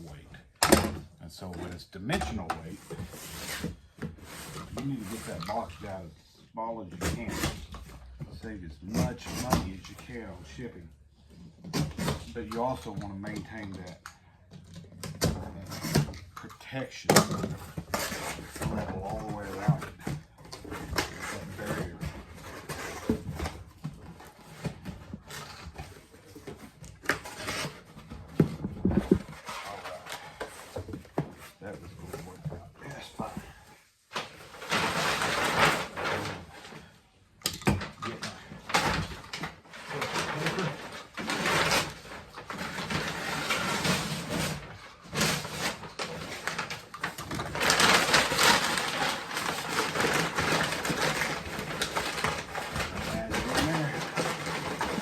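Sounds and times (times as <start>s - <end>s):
cardboard rustling: 0.0s - 55.0s
cardboard knocking and scraping: 17.1s - 33.6s.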